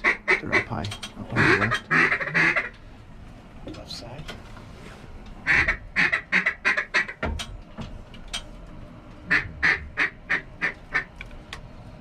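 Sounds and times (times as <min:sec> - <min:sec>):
duck call quacks: 0:01.4 - 0:02.7, 0:05.4 - 0:07.2, 0:09.3 - 0:11.1.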